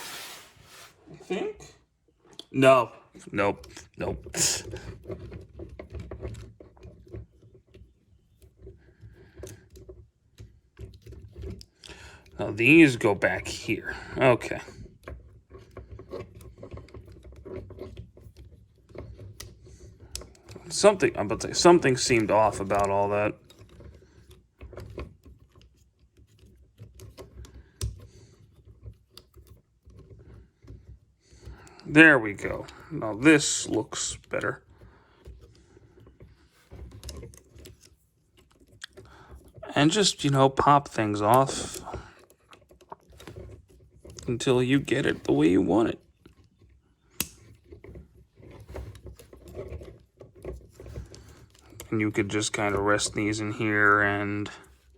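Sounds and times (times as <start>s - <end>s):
soft handling noise: 0.0s - 54.9s
plastic clicks and knocks: 14.5s - 32.8s, 33.8s - 54.9s
plastic toy parts clicking: 36.7s - 51.9s.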